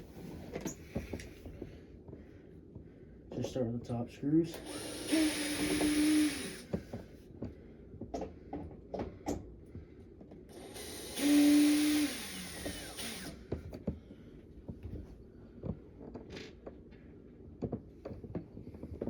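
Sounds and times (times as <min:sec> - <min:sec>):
cordless drill running: 0:04.5 - 0:06.8, 0:10.5 - 0:13.5.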